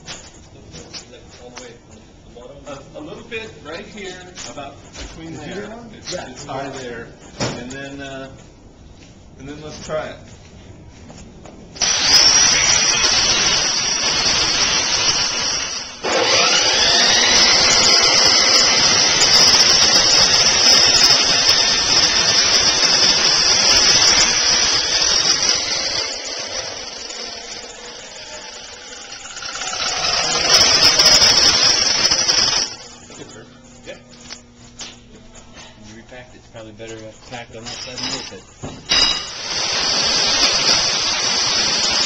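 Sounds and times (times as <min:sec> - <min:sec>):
power tool whining: 0:11.8 - 0:33.0, 0:38.9 - 0:42.0.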